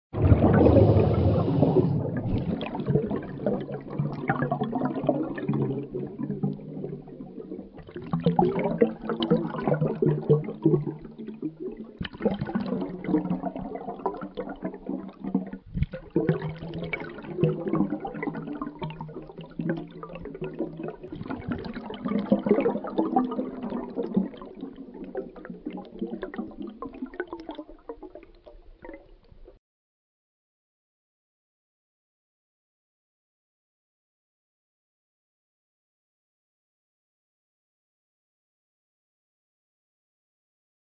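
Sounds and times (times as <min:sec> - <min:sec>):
bubbles streaming underwater: 0:00.2 - 0:29.6.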